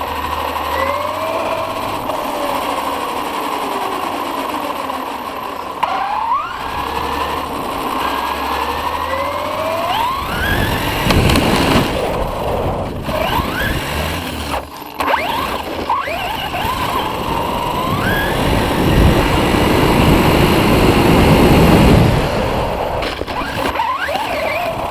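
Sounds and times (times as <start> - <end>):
electric motor and propeller whining: 0.0 - 24.9
wind rush: 16.6 - 23.0.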